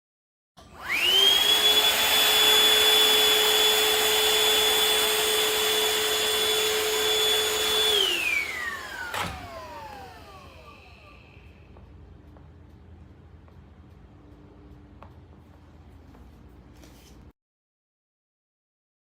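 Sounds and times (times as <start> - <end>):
vacuum mop whining: 0.6 - 11.9.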